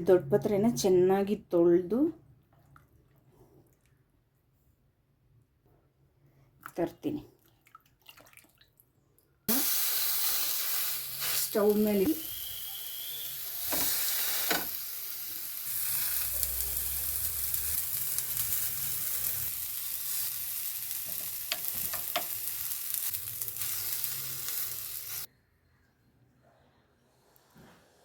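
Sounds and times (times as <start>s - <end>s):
leaves sizzling in a hot pan: 9.5s - 25.3s.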